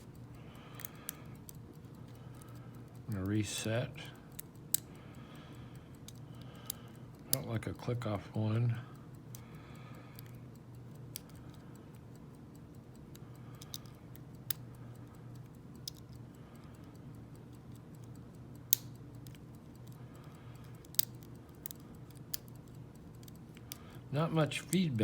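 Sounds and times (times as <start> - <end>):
lock pick clicking in padlock: 20.7 - 23.8.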